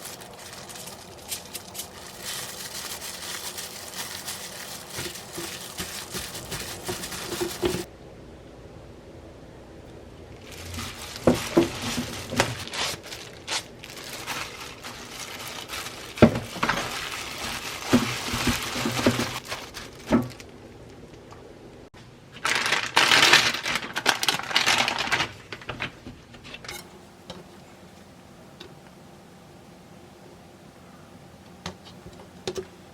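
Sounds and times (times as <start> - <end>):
plastic packaging crinkling: 0.0 - 7.9, 10.3 - 21.3, 22.3 - 26.0
utensils clicking and knocking: 4.8 - 7.9.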